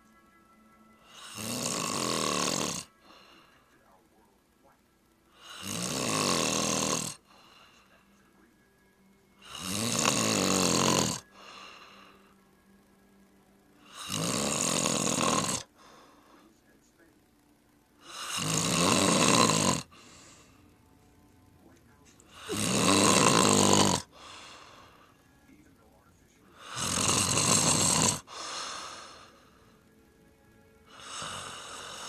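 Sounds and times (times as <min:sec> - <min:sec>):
person snoring: 0:01.0 - 0:03.7, 0:05.3 - 0:08.1, 0:09.4 - 0:12.4, 0:13.8 - 0:16.5, 0:18.0 - 0:20.7, 0:22.3 - 0:25.2, 0:26.5 - 0:29.8, 0:30.9 - 0:32.0
soft breath: 0:03.0 - 0:04.0, 0:07.2 - 0:08.4, 0:11.3 - 0:12.5, 0:15.8 - 0:16.7, 0:19.9 - 0:20.8, 0:24.1 - 0:25.3, 0:28.3 - 0:29.9.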